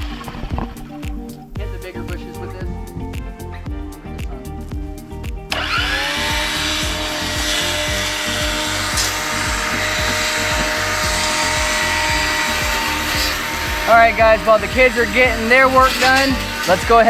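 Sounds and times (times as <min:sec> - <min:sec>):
background music with beat: 0:00.0 - 0:17.0
string trimmer motor running: 0:05.5 - 0:17.0.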